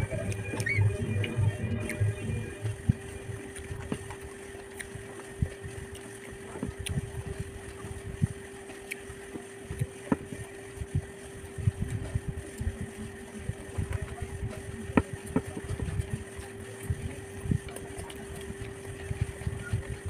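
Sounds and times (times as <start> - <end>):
steady hum: 0.0 - 20.0
person chewing food: 3.4 - 7.7.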